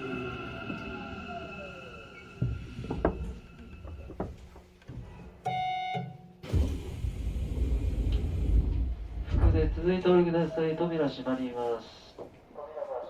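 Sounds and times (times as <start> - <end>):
train low rumble: 0.0 - 5.2, 6.5 - 11.7.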